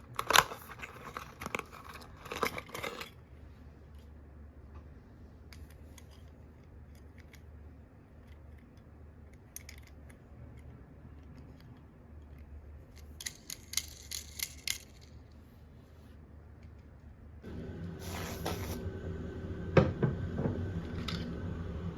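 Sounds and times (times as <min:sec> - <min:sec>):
toy cars and plastic cases clicking: 0:00.0 - 0:03.2, 0:08.2 - 0:15.4.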